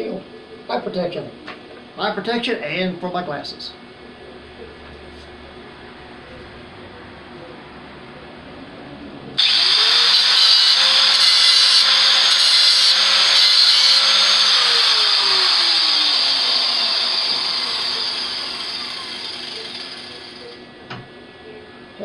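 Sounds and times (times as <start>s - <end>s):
electric grinder grinding metal: 9.4s - 20.6s
grinder motor spinning down: 9.4s - 20.6s.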